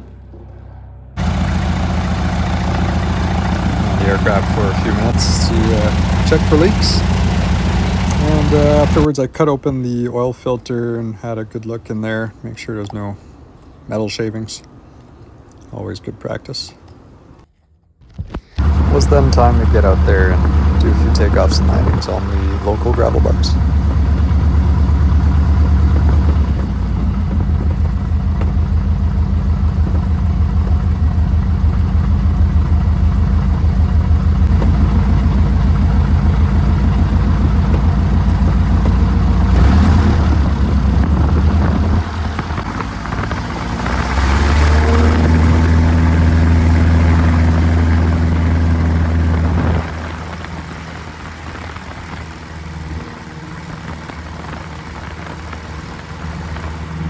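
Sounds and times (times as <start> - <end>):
aircraft piston engine running: 1.2 - 9.1, 18.6 - 50.6.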